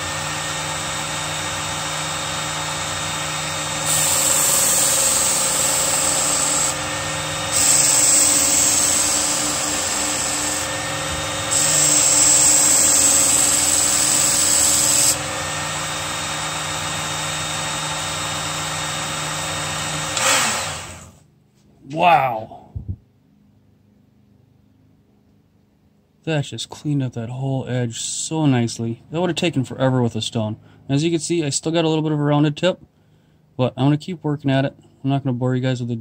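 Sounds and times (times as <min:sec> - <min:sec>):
electric belt sharpener running: 0:00.0 - 0:21.2.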